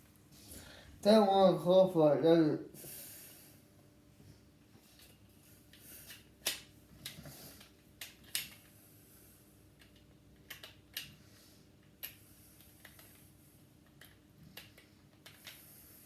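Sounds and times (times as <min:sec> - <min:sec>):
plastic parts clicking together: 0:06.1 - 0:08.7, 0:09.8 - 0:11.1, 0:13.8 - 0:15.6.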